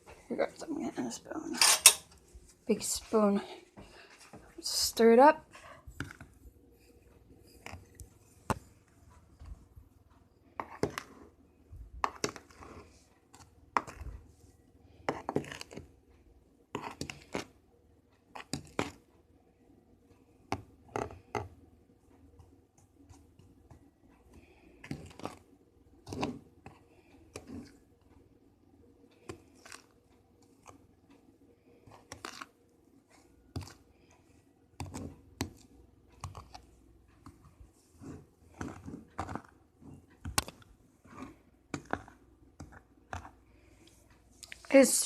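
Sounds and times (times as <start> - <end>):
spoon scraping and knocking container: 12.0 - 14.1, 15.1 - 15.9, 16.7 - 17.5, 26.0 - 27.8, 34.8 - 43.4.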